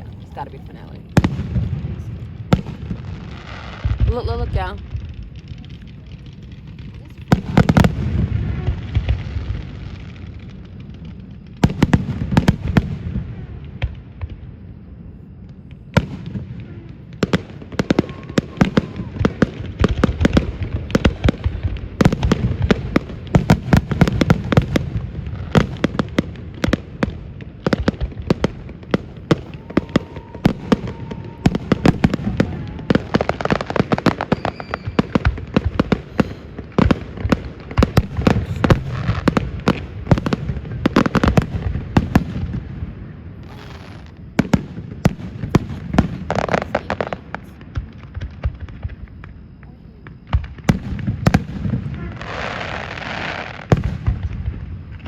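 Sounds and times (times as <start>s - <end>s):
fireworks bangs and crackling: 0.0s - 55.0s.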